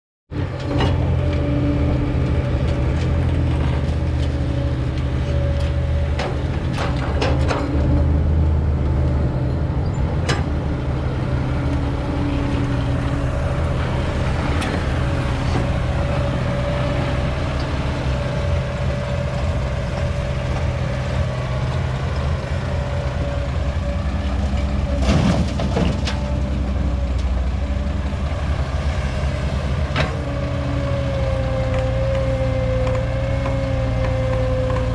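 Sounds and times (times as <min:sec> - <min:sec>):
diesel engine running: 0:00.3 - 0:34.9
metal knocks and clanks: 0:05.6 - 0:08.1.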